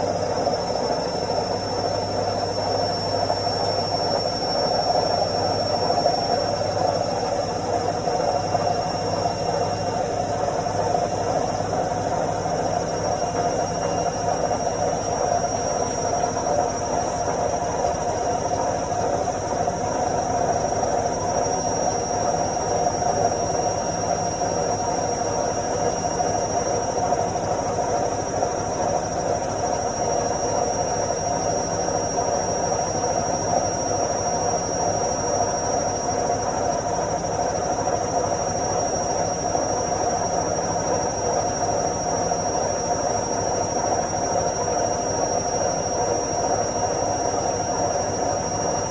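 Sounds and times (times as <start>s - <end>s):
washing machine spinning: 0.0s - 48.9s.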